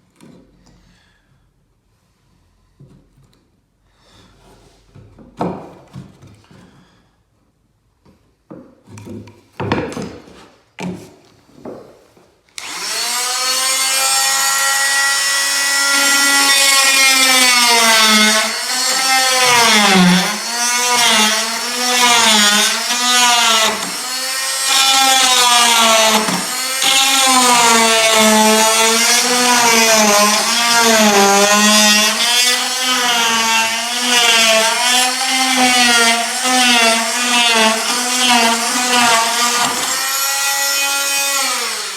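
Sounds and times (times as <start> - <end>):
electric power tool on wood: 12.6 - 41.9.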